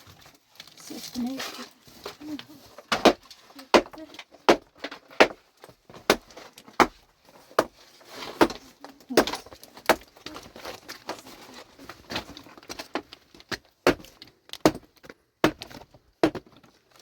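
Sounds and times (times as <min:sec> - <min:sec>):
pickaxe striking rock: 0:03.8 - 0:05.4, 0:13.8 - 0:16.5.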